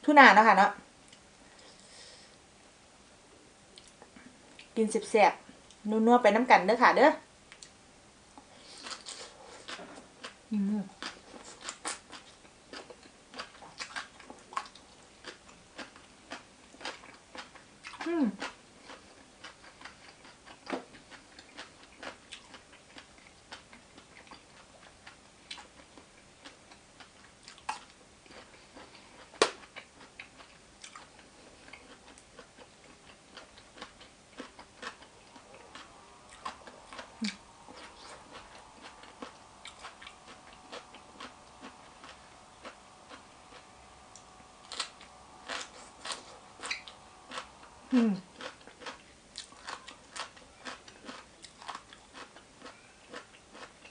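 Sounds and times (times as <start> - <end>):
faint steady hum: 0.0 - 53.9
person chewing with wet mouth clicks: 11.0 - 47.5.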